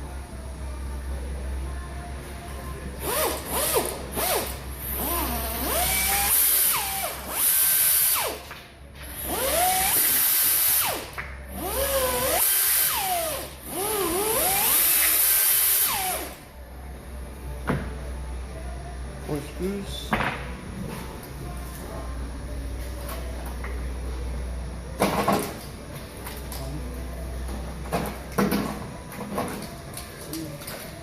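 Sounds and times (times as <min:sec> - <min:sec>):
power drill running: 0:03.0 - 0:08.4, 0:09.2 - 0:16.4.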